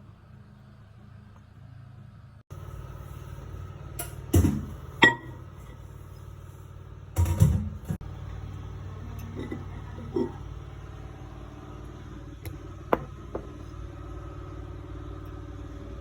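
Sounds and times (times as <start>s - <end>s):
microwave oven humming: 0.0s - 16.0s
clunks: 7.2s - 8.0s.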